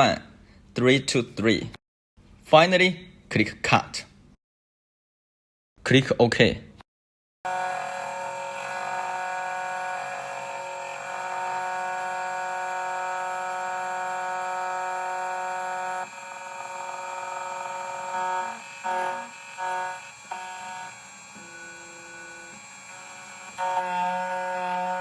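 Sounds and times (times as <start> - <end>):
key cutting machine whine: 7.5 - 25.0.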